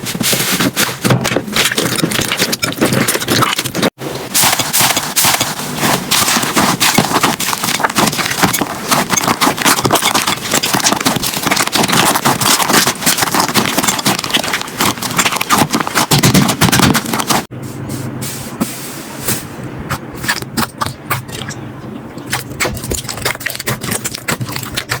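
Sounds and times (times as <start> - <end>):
slime squishing with sticky pops: 1.4 - 17.5, 22.3 - 25.0.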